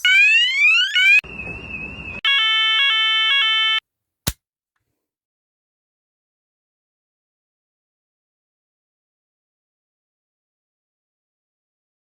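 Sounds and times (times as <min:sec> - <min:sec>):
harsh buzzing alarm tone: 0:00.0 - 0:03.8
rising sweep alarm tone: 0:00.0 - 0:03.8.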